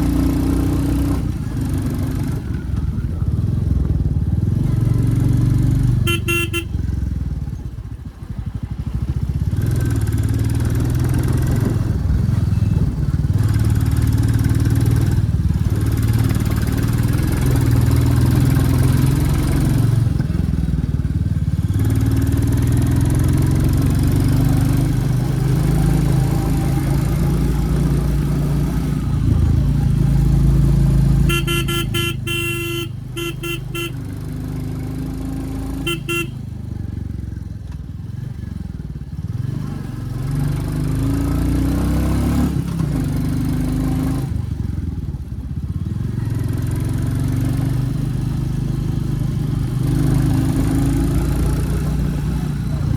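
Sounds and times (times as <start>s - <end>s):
motorcycle engine running: 0.0s - 52.9s
horn beeping: 6.0s - 6.8s, 31.2s - 34.1s, 35.8s - 36.4s.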